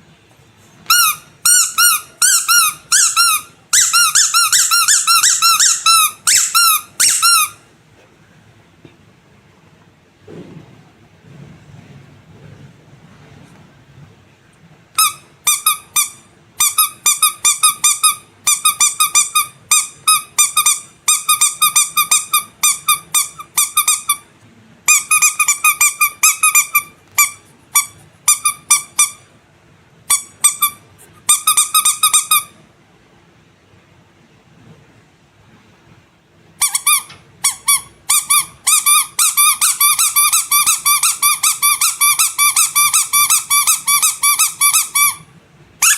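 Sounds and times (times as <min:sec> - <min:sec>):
squeaky rubber toy squeaks: 0:00.8 - 0:07.7, 0:14.9 - 0:29.3, 0:30.0 - 0:32.6, 0:36.6 - 0:45.9.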